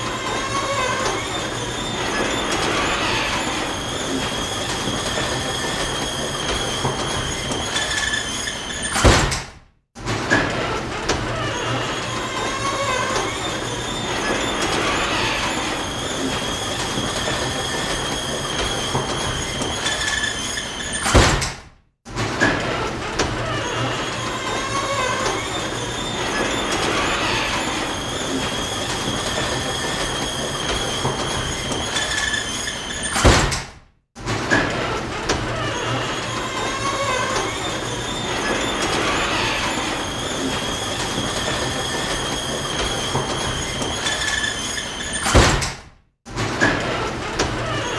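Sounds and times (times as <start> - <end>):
garage door rolling rumble: 0.0 - 47.9
garage door hitting shut: 8.9 - 9.6, 21.0 - 21.7, 33.1 - 33.8, 45.2 - 45.9.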